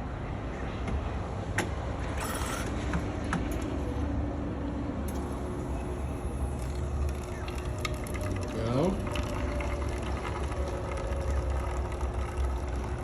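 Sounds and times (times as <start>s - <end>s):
espresso machine pump hum: 5.1s - 13.0s.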